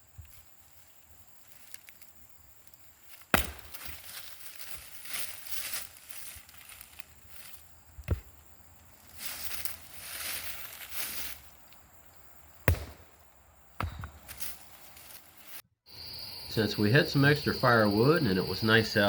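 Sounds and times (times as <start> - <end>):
axe chopping firewood: 3.2 - 4.1, 12.6 - 13.2, 13.8 - 14.5.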